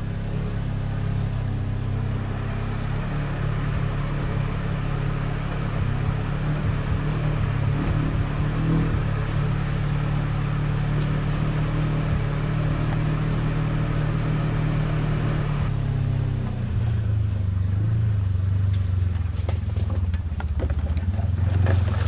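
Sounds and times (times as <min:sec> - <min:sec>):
off-road vehicle engine running: 0:00.0 - 0:22.0
knocks and clatter: 0:18.6 - 0:22.0.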